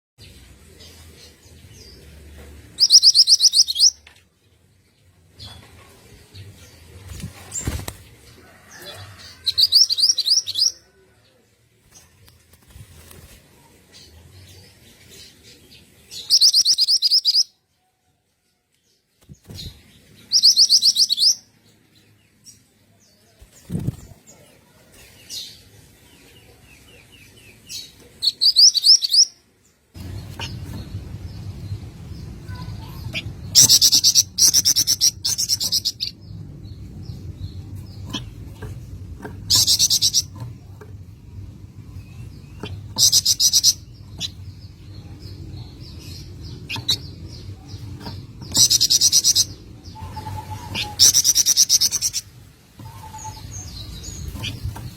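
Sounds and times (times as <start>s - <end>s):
low steady hum: 29.6s - 54.9s.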